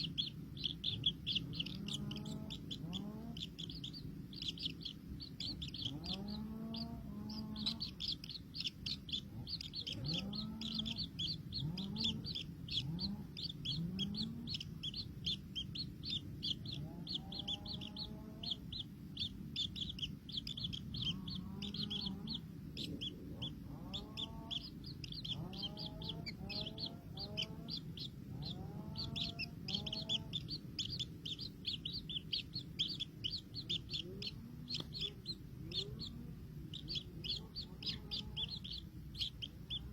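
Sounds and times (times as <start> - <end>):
chicks cheeping: 0.0 - 39.9
hen clucking: 0.0 - 39.9.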